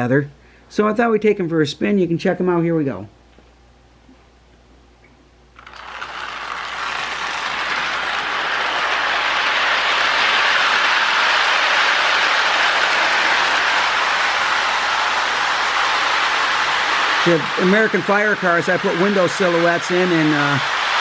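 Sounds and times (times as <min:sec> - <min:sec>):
model train whirring on track: 0:05.6 - 0:21.0.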